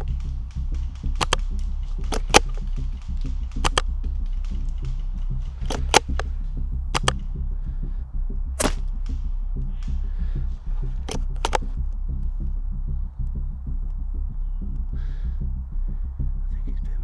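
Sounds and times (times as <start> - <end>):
low pulsing drone: 0.0 - 17.0
airsoft gunfire cracks: 8.6 - 9.0.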